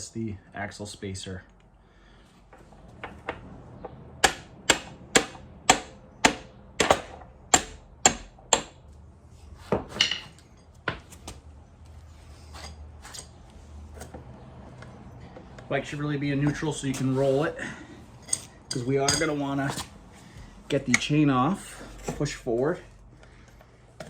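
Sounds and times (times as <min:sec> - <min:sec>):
hammer striking metal axle: 0:03.0 - 0:08.8, 0:18.2 - 0:19.4.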